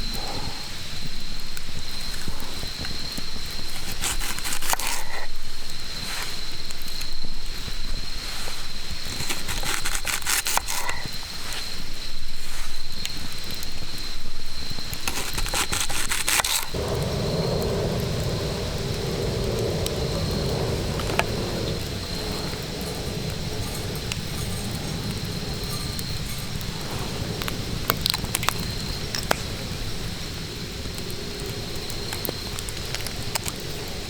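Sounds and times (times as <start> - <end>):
wood crackling and snapping: 1.3 - 6.0, 8.9 - 11.6, 14.7 - 34.0
steady low rushing noise: 16.8 - 34.0.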